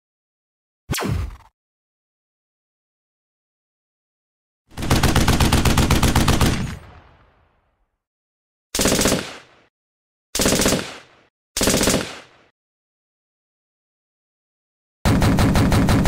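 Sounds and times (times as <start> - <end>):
rapid-fire bangs: 8.8 - 9.7, 10.4 - 12.5, 15.1 - 16.0.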